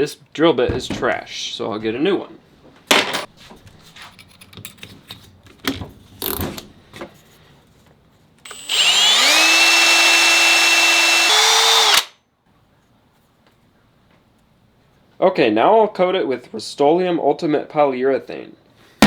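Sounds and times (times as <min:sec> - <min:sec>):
handling clicks and knocks: 0:00.7 - 0:02.0
electric drill whining: 0:08.4 - 0:12.1.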